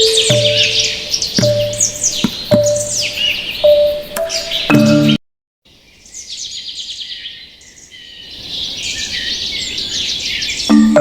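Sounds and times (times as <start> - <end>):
sustained music notes: 0.0 - 5.2
small birds chirping and trilling: 0.0 - 11.0.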